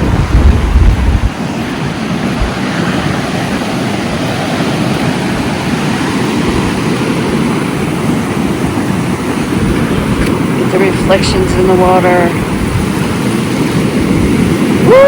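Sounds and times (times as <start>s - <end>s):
ocean waves breaking: 0.0s - 15.0s.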